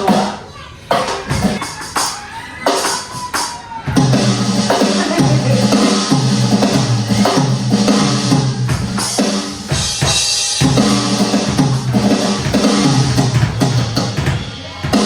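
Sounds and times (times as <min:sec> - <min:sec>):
drum kit playing: 0:00.0 - 0:15.0
cymbals: 0:01.0 - 0:15.0
backing track bass line: 0:04.0 - 0:15.0.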